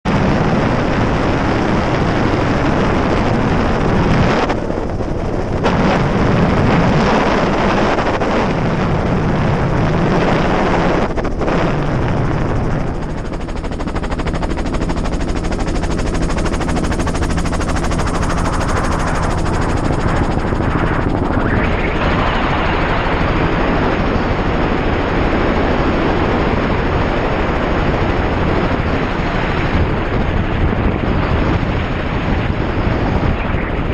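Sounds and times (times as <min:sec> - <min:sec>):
strong wind buffeting microphone: 0:00.0 - 0:33.9.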